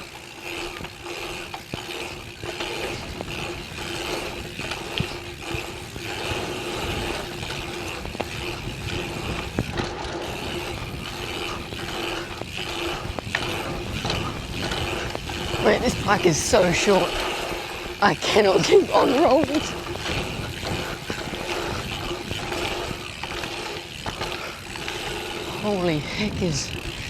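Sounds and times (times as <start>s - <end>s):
bike freehub buzzing: 0.0s - 27.0s
tyres and wind rumble: 0.0s - 27.0s.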